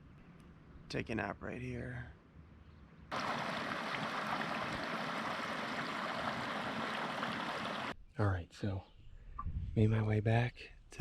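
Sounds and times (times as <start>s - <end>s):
rushing water: 3.1s - 8.0s.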